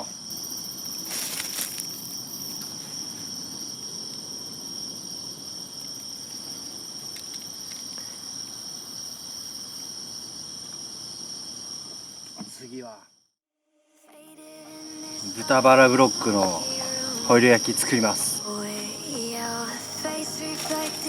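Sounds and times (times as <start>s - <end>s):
insects trilling: 0.0s - 13.3s, 14.1s - 21.0s
short burst of hiss: 19.7s - 21.0s.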